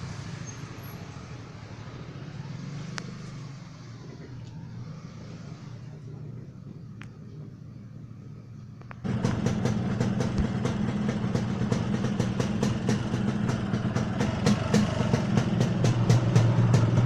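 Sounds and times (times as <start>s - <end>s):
motorcycle engine idling with pops: 8.8s - 17.0s.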